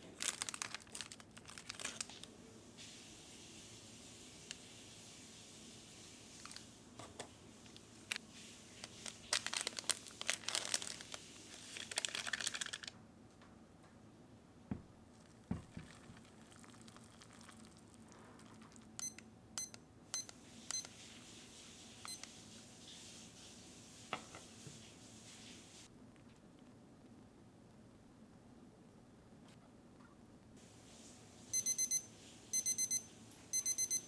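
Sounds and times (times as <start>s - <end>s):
plastic packaging crinkling: 0.0s - 2.3s, 6.3s - 6.7s, 7.6s - 13.0s, 15.1s - 18.8s
short high electronic beeps: 31.6s - 34.0s.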